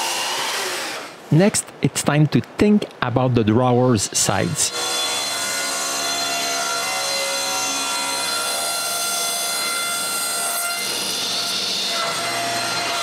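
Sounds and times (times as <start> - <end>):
electric saw cutting wood: 0.0 - 1.2, 4.6 - 13.0.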